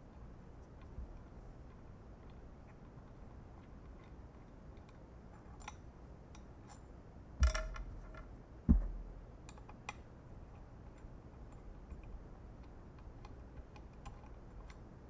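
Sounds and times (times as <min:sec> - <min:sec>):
metallic clank: 0:07.4 - 0:09.1
dull thump: 0:08.7 - 0:09.2.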